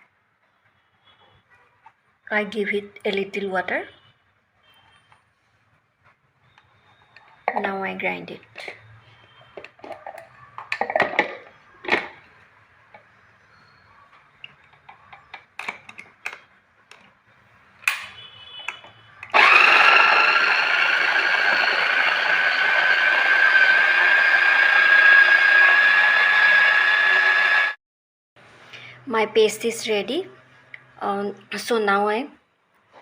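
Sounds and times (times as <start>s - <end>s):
electric mixer grinder whining: 19.3s - 27.8s.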